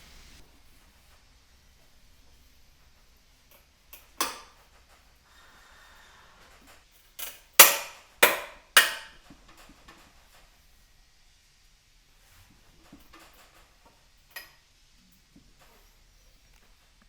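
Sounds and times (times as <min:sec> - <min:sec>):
hammer striking steel: 0:04.2 - 0:04.6, 0:07.2 - 0:09.2.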